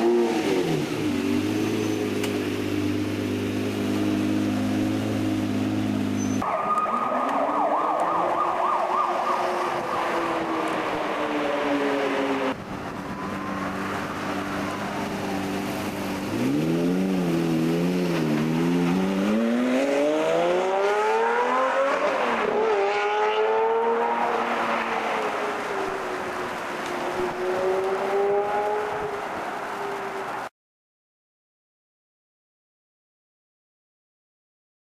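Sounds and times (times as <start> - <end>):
sports car engine revving: 13.8 - 25.3, 26.9 - 29.2.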